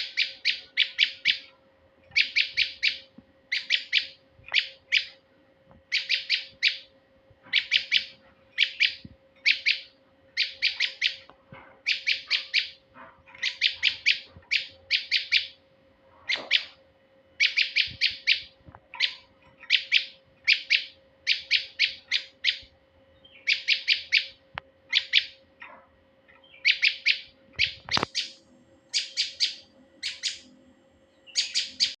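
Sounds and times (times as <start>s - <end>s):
faint steady hum: 0.0s - 32.0s.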